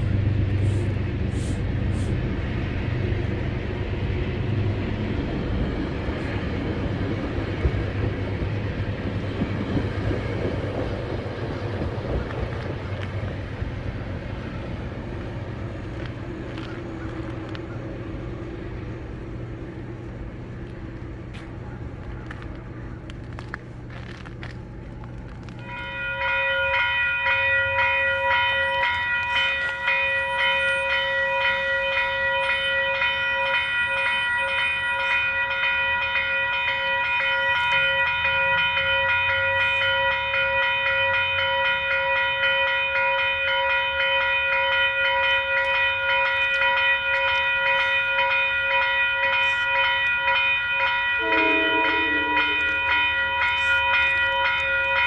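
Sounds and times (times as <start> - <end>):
railroad crossing bell ringing: 0.0 - 23.4, 24.9 - 55.0
train running: 0.0 - 55.0
train horn: 49.2 - 55.0.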